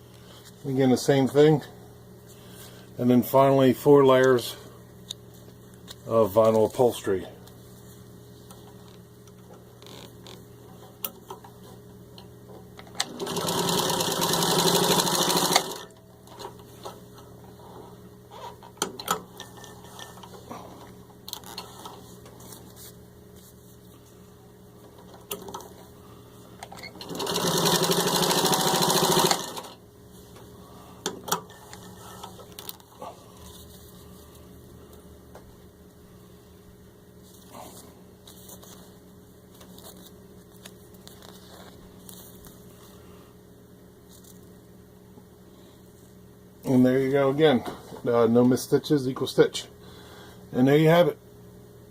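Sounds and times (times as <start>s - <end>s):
sewing machine stitching: 13.0s - 15.9s, 26.9s - 29.8s.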